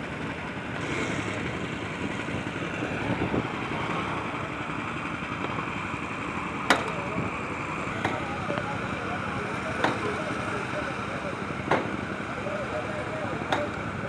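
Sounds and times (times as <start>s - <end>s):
engine running: 0.0s - 14.0s
street noise: 0.0s - 14.0s.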